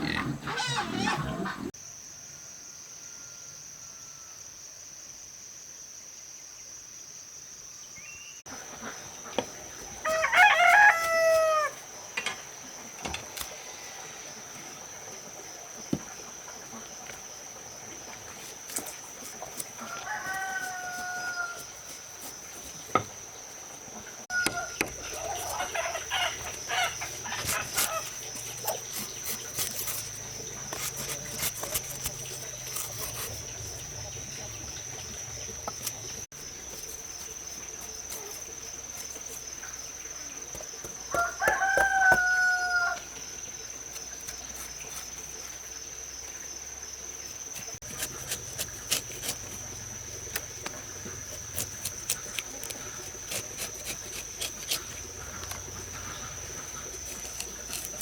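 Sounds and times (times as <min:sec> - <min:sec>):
rooster crowing: 0:10.0 - 0:11.8, 0:19.8 - 0:21.7, 0:24.3 - 0:28.0, 0:41.1 - 0:43.1.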